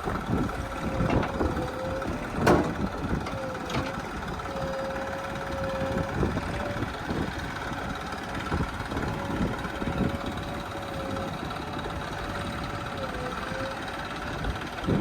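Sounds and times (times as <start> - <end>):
heavy machinery diesel engine: 0.0 - 15.0
thuds and knocks: 0.9 - 4.0.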